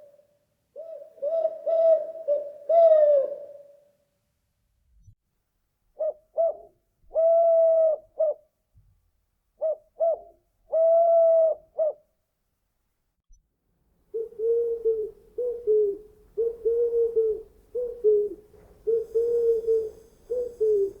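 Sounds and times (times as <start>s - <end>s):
closely spaced lower hoots: 0.0s - 4.0s, 6.0s - 8.4s, 9.6s - 12.1s, 14.1s - 21.0s
owl hooting: 0.8s - 3.9s, 6.0s - 8.4s, 9.6s - 12.0s, 14.1s - 21.0s.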